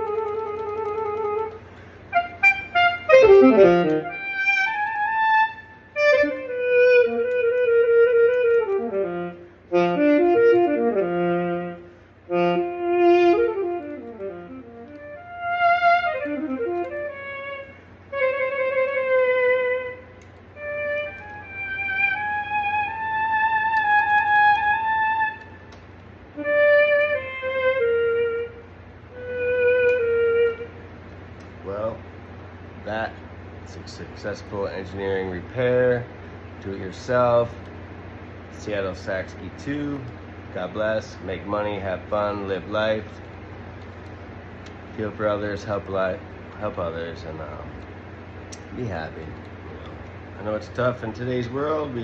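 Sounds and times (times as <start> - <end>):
digital saxophone playing: 0.0 - 32.1, 48.6 - 52.0.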